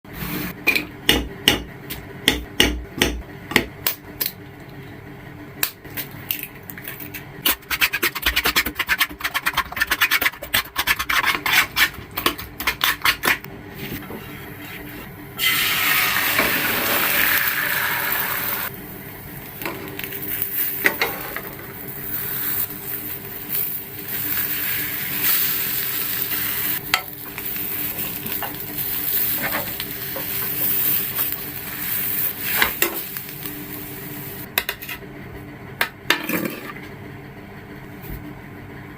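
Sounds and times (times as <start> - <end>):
spatula scraping a pan: 7.5 - 15.6
egg sizzling in a pan: 15.4 - 34.5.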